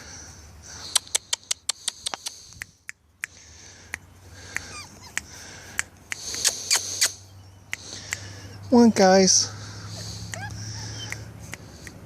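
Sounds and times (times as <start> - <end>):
sharp clicks: 0.8 - 8.4
puppies whining and squeaking: 4.6 - 5.4, 9.6 - 11.6.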